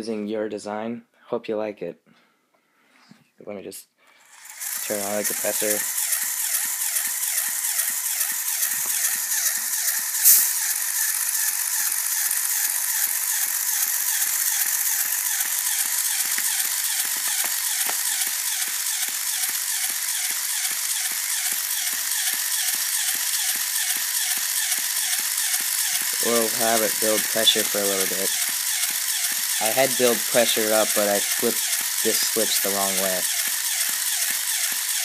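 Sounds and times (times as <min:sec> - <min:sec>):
toy air compressor whirring: 0:04.1 - 0:35.0
sharp click: 0:10.2 - 0:10.7, 0:15.4 - 0:30.2.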